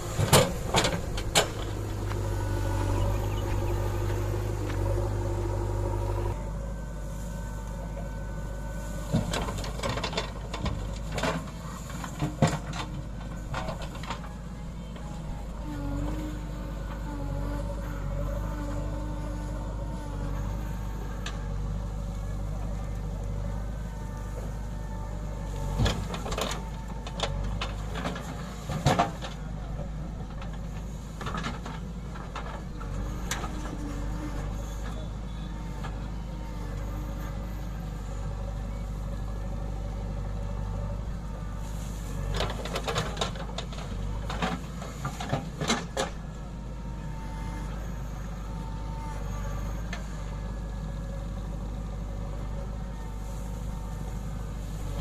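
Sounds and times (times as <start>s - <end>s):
diesel engine running under load: 0.0s - 55.0s.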